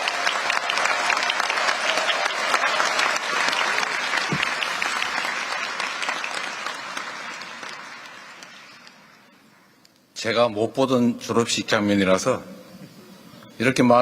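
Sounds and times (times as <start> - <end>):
audience applauding: 0.0 - 9.4.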